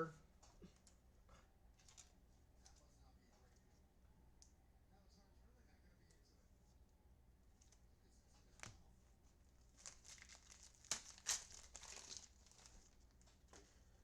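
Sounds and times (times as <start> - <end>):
wrapper and cards crinkling: 1.8 - 2.1, 9.6 - 13.7.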